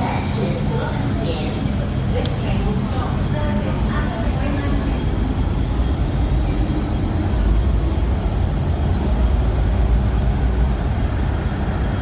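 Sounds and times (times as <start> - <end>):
metro train rumbling: 0.0 - 12.0.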